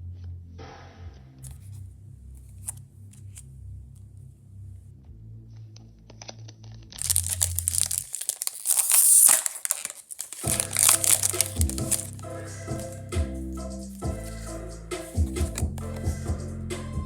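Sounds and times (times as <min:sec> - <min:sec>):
foil wrapper tearing and crinkling: 0:07.0 - 0:12.2
background music: 0:10.4 - 0:17.0.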